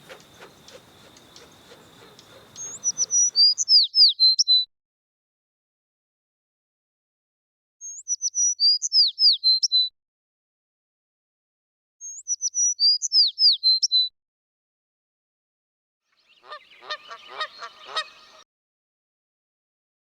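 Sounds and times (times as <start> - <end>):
rough pulsing animal call: 0.0 - 3.6
songbird whistling: 0.0 - 4.5, 7.8 - 9.8, 12.0 - 14.0.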